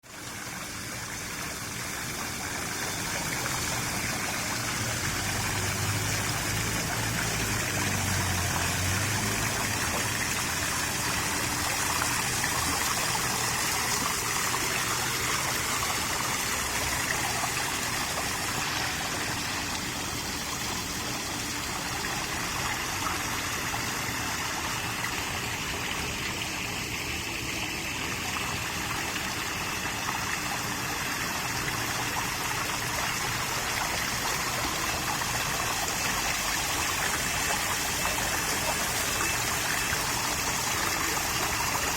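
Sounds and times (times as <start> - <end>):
water splashing down waterfall: 0.0 - 41.9.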